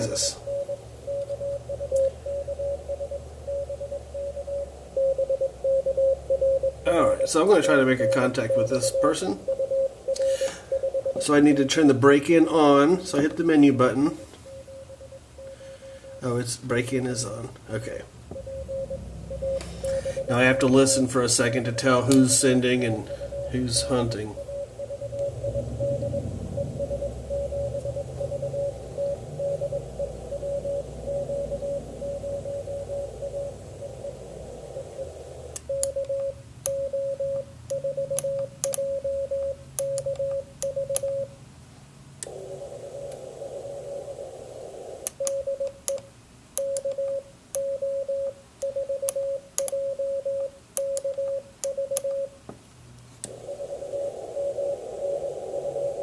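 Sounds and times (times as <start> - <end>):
morse code tone keyed on and off: 0.0 - 16.4, 18.3 - 41.4, 42.3 - 52.4
radio band hiss: 19.6 - 25.0, 28.1 - 35.6, 42.2 - 45.2, 53.3 - 56.0.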